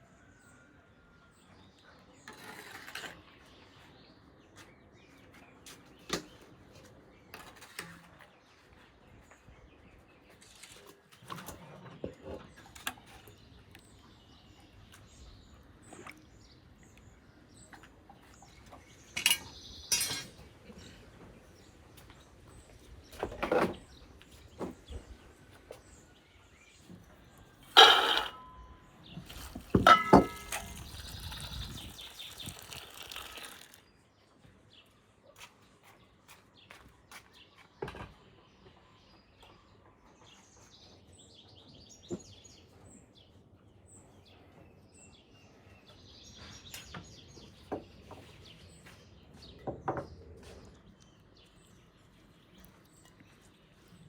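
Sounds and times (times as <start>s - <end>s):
cookware clinking: 19.2s - 20.4s, 27.8s - 28.7s, 29.6s - 31.1s.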